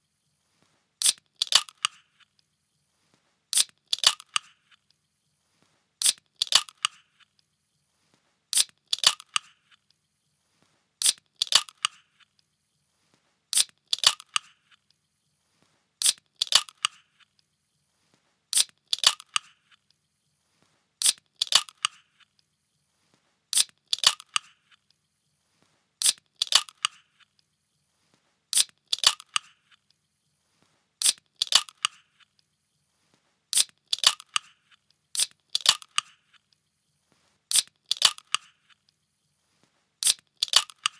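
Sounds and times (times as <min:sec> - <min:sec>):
metal can opening crack: 0:16.0 - 0:17.0, 0:23.6 - 0:24.5, 0:26.0 - 0:27.0, 0:28.6 - 0:29.5, 0:31.0 - 0:32.0, 0:33.6 - 0:34.5, 0:40.0 - 0:40.9.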